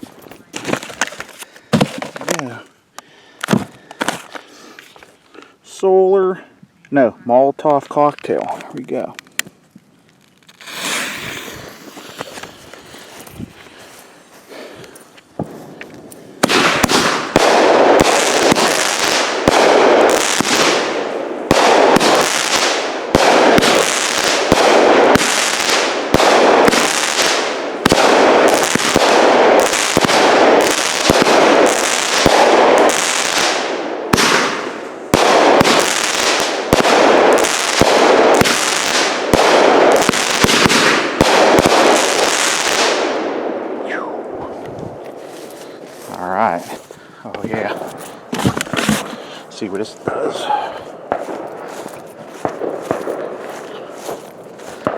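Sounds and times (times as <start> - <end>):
firework cake shots: 10.5 - 12.6.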